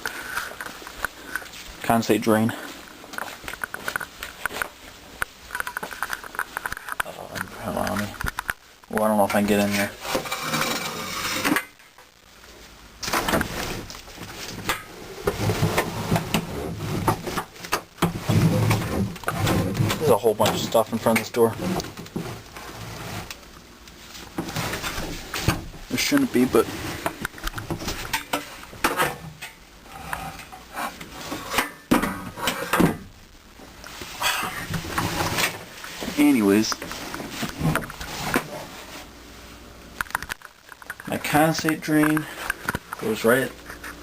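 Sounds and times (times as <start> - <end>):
household items clattering and knocking: 5.5 - 12.0, 13.0 - 23.3, 24.3 - 29.6.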